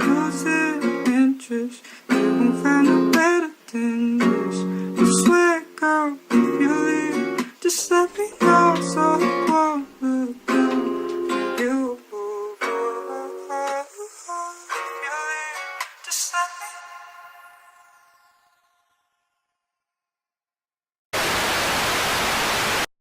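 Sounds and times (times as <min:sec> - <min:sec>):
picked guitar melody notes: 0:00.0 - 0:16.0
acoustic guitar strumming chords: 0:00.0 - 0:17.7.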